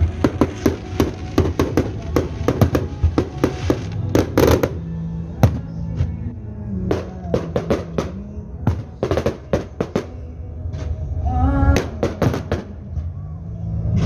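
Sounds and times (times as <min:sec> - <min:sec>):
fireworks bangs and cracks: 0:00.0 - 0:05.7, 0:06.9 - 0:10.9, 0:11.8 - 0:12.8.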